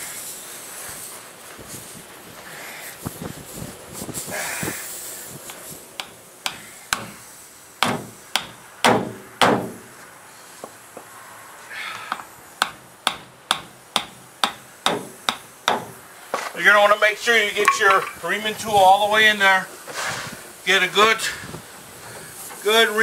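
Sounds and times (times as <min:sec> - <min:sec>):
sharp metallic knocks: 0:07.8 - 0:09.8, 0:12.6 - 0:16.0, 0:17.6 - 0:18.2.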